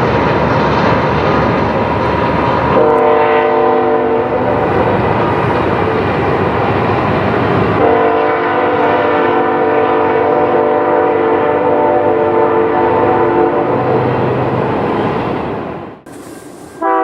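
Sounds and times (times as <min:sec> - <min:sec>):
train noise: 0:00.0 - 0:17.0
locomotive air horn chord: 0:02.8 - 0:04.6, 0:07.8 - 0:14.0, 0:16.7 - 0:17.0.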